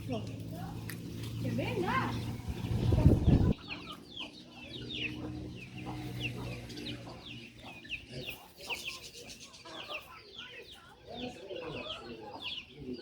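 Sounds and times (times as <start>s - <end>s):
birds chirping: 0.0s - 13.0s
low rumble on microphone: 1.4s - 3.6s.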